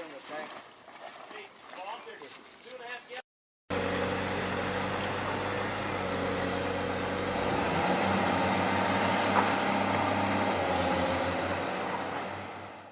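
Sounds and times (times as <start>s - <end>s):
engine running steadily: 3.7s - 12.9s.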